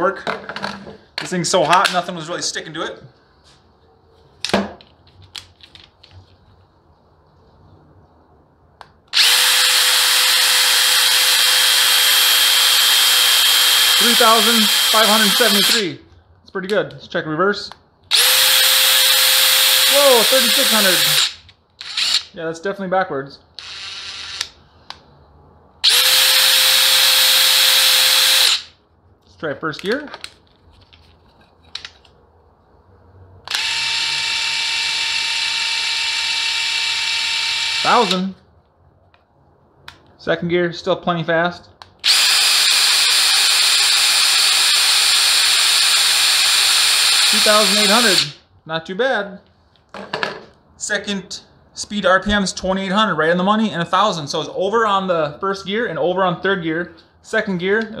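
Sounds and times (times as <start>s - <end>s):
impact driver whining: 9.1s - 15.8s, 18.1s - 22.3s, 25.8s - 28.7s, 33.5s - 38.2s, 42.0s - 48.3s.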